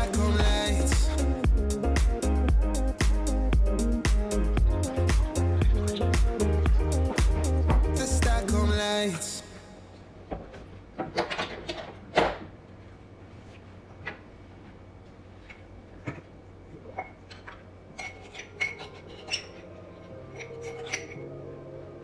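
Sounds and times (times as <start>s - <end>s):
dishes and glassware clinking: 20.4s - 21.2s.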